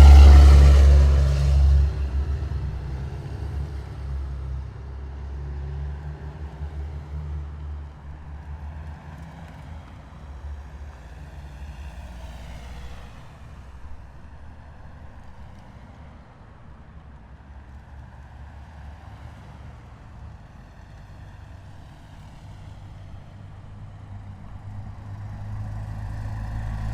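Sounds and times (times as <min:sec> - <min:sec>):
heavy vehicle engine rumble: 0:00.0 - 0:05.6.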